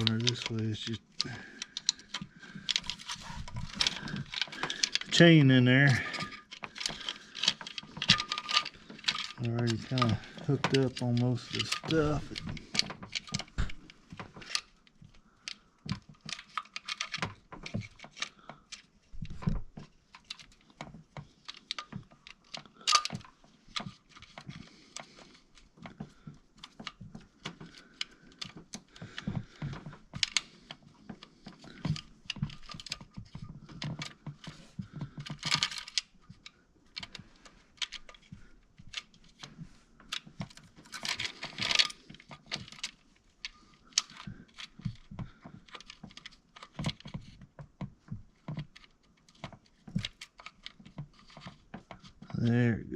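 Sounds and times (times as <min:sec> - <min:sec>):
timing chain clicks and rattles: 0:00.0 - 0:13.7.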